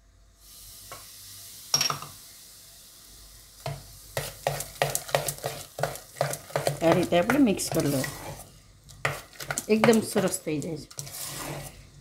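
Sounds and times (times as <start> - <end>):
fruit salt fizzing hiss: 0.3 - 4.4
spoon stirring batter: 3.7 - 12.0.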